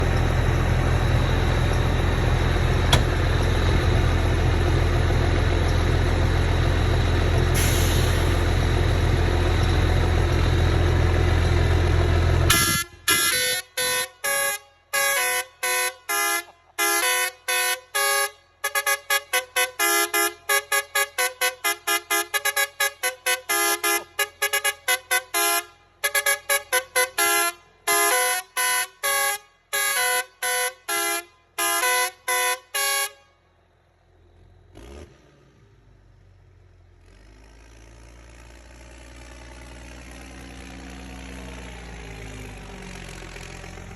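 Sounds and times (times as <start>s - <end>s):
car horn short blasts: 12.5s - 33.4s.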